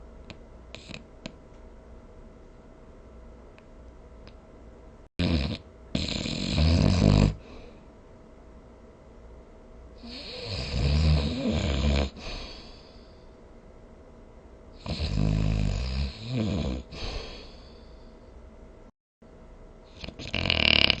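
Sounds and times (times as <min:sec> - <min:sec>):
person snoring: 0:05.2 - 0:07.6, 0:10.0 - 0:13.0, 0:14.8 - 0:17.9, 0:19.9 - 0:21.0.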